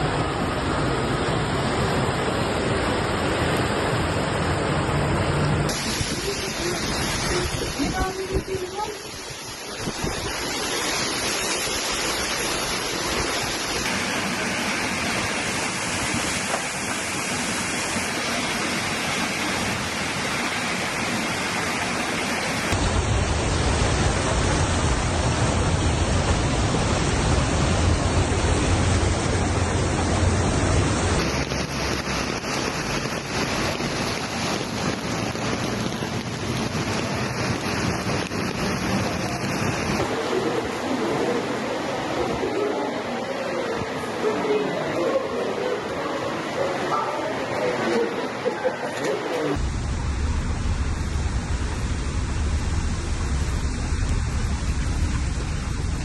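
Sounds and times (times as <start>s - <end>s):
heavy downpour and rushing water: 0.0s - 56.0s
deep rumble: 22.7s - 32.6s, 49.6s - 56.0s.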